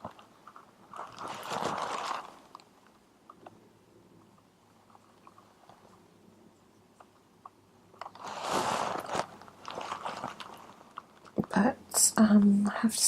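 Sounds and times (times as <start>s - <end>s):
microphone rubbing on fabric: 8.2s - 9.2s.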